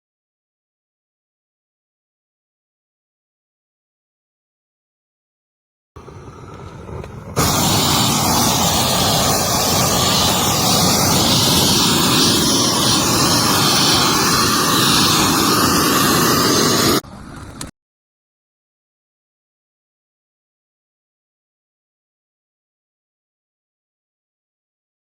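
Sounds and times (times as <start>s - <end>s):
gas torch flame rushing: 6.0s - 17.7s.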